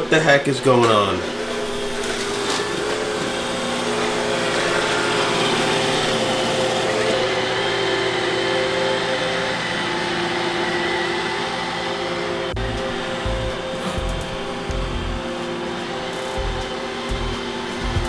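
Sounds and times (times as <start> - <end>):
robot vacuum motor whine: 0.0 - 18.0
suction hiss: 9.9 - 18.0.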